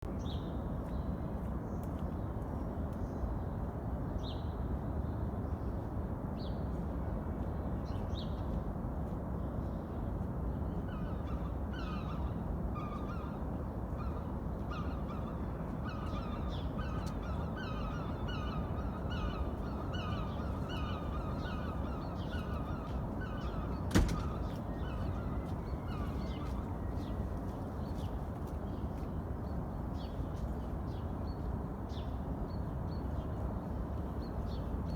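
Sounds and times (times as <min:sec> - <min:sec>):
birds calling: 0:14.0 - 0:27.2.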